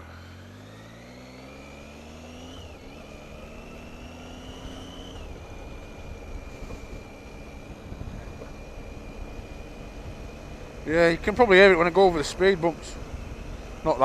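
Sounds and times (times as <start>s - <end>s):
gear change: 0.0s - 14.0s
motorcycle engine revving: 0.0s - 14.0s
wind noise: 4.6s - 10.5s.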